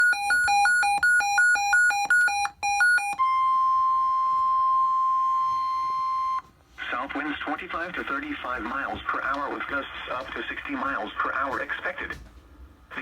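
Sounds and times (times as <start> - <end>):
alternating electronic alert beeps: 0.0 - 6.5
steady warning tone: 0.0 - 12.2.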